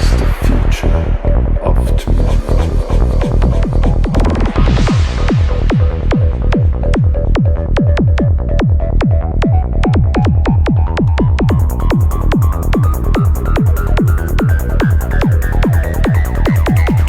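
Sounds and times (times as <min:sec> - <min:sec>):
kick drum: 0:03.4 - 0:17.0.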